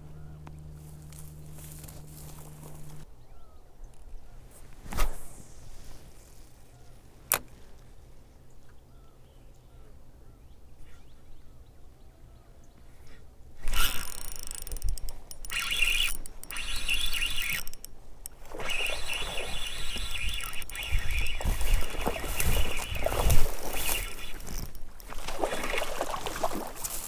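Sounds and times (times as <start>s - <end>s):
faint bird chirps: 3.2s - 4.5s, 8.4s - 13.3s, 18.6s - 24.8s.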